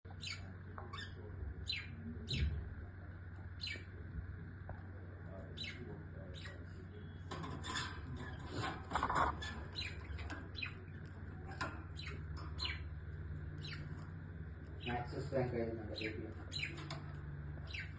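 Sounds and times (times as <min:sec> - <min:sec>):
small birds chirping: 0:00.1 - 0:17.9
steady low hum: 0:00.1 - 0:17.9.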